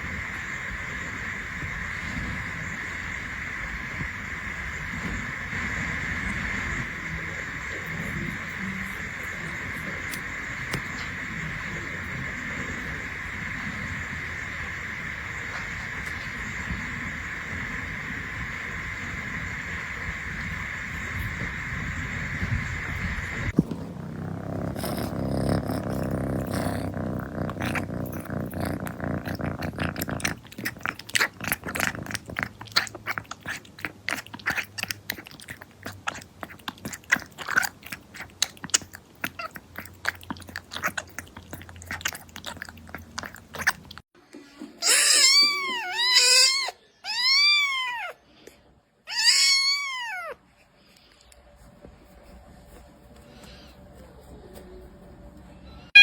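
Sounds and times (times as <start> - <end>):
steady rough noise: 0.0 - 32.4
kitten lapping milk: 0.0 - 44.0
kitten meowing: 44.8 - 48.2, 49.1 - 50.4.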